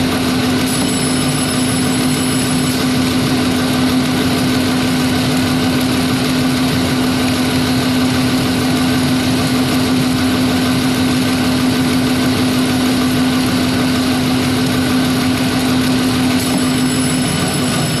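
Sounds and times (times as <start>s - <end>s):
machine humming: 0.0s - 18.0s.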